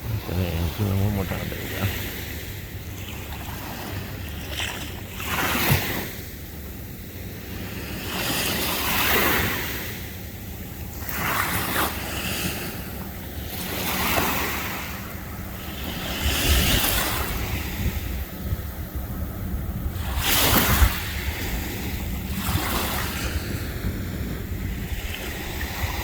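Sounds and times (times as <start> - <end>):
small waves breaking on sand: 0.0 - 6.4, 7.2 - 10.3, 10.9 - 19.0, 19.7 - 26.0
wind rumbling on microphone: 14.2 - 26.0.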